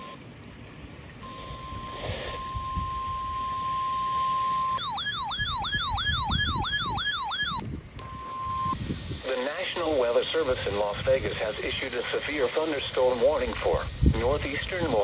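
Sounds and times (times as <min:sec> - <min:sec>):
yelping siren sweep: 0:01.2 - 0:07.6
steady alert tone: 0:04.8 - 0:07.6.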